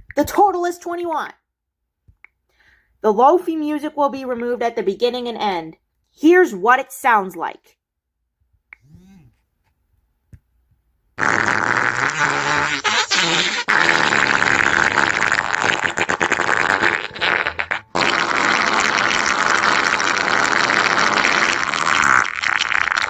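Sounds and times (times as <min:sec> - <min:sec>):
farting sound effect: 0:11.2 - 0:23.0.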